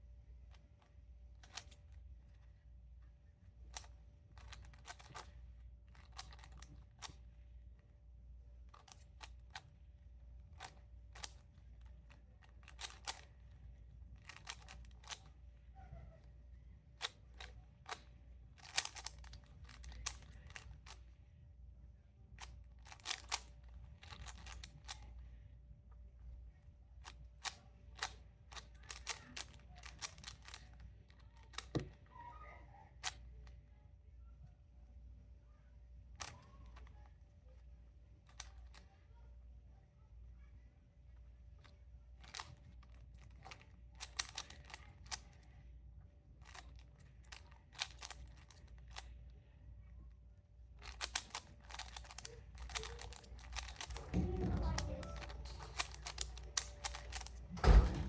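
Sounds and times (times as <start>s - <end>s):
puzzle cube clicking: 10.6s - 11.4s, 12.6s - 13.3s, 14.2s - 15.3s, 18.6s - 21.0s, 22.4s - 25.0s, 42.2s - 45.3s, 46.4s - 49.1s, 50.8s - 58.0s.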